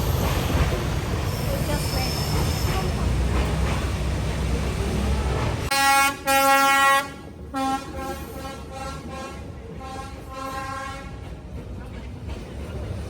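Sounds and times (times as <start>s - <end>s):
train rumbling past: 0.0s - 13.0s
train horn blasts: 5.7s - 11.2s.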